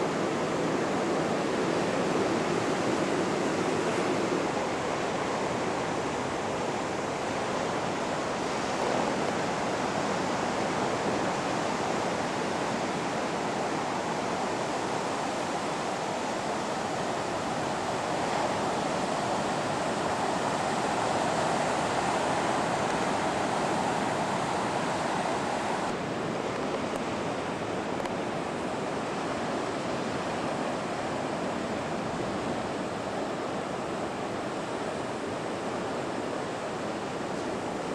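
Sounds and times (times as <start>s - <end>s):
ocean surf breaking: 0.0s - 37.9s.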